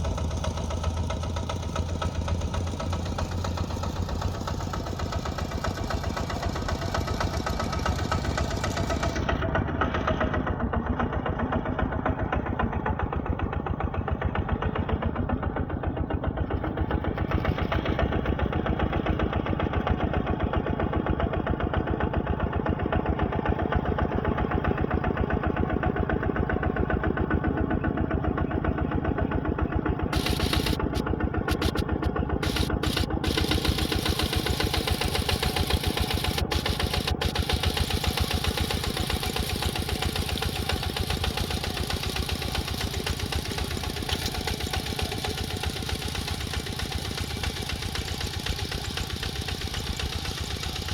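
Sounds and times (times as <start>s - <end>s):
diesel engine running: 30.2s - 50.9s.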